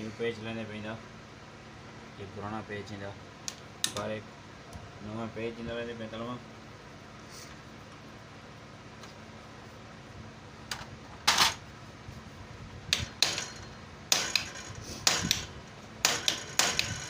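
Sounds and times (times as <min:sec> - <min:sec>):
metallic clacks of hand tools: 0:12.9 - 0:17.0.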